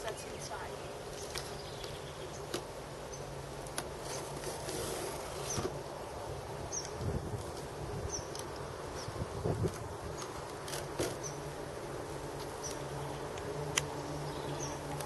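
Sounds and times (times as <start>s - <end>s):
scraping rustle: 3.8s - 5.8s.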